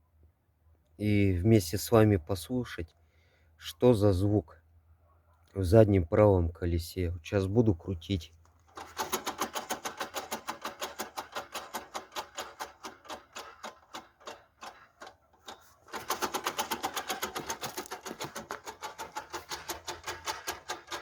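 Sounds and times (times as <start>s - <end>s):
wheel spinning with clicking scrape: 8.7s - 21.0s.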